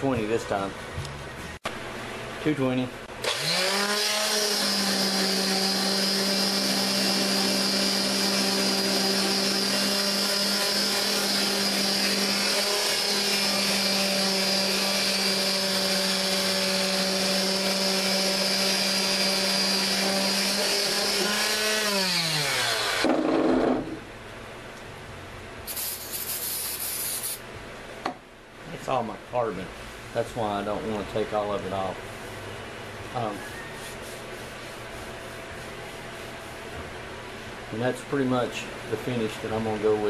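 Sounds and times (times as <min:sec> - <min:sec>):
sander motor whine: 0:03.2 - 0:23.1
sanding hiss on metal: 0:25.7 - 0:27.4.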